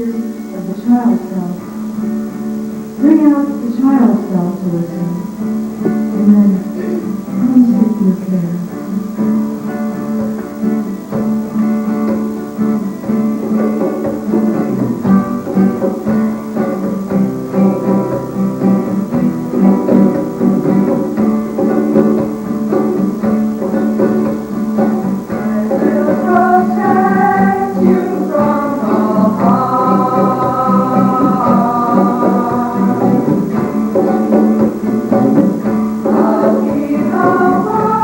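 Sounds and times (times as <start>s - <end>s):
guitar picking: 0.0s - 38.0s
person singing: 3.0s - 9.2s, 25.3s - 38.0s.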